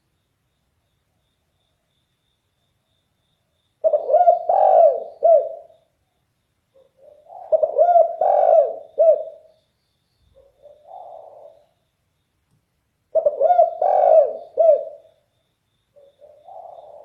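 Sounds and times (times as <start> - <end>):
dove cooing: 3.8 - 5.7, 6.8 - 9.5, 10.4 - 11.7, 13.1 - 15.2, 16.0 - 17.0.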